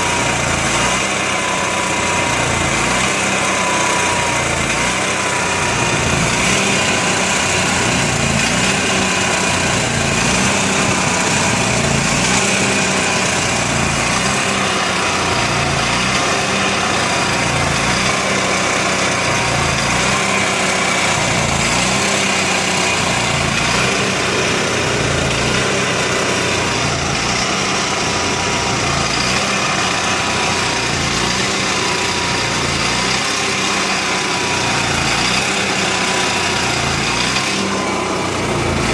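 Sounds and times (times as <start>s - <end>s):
generator running unevenly: 0.0s - 38.9s.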